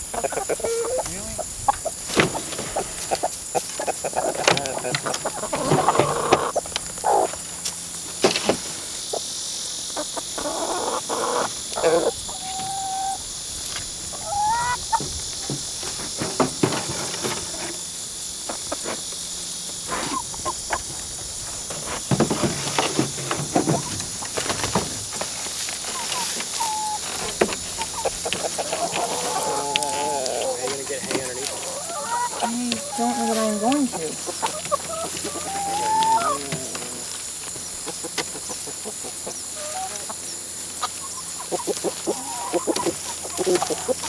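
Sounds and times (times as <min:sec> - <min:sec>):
hen calls: 0:00.0 - 0:01.9, 0:10.0 - 0:13.2, 0:14.1 - 0:15.6, 0:25.8 - 0:44.0
hens clucking: 0:00.0 - 0:44.0.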